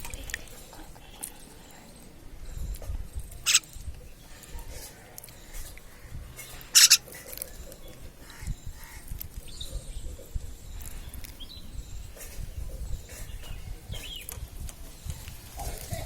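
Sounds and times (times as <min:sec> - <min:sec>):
baby bird chirping: 0:03.4 - 0:03.7, 0:06.5 - 0:07.1.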